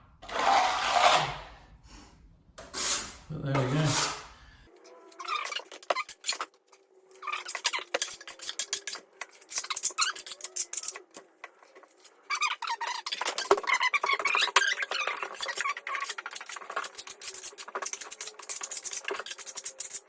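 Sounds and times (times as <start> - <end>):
plastering tool scraping plaster: 0.2 - 1.6, 2.6 - 4.4, 7.2 - 20.0.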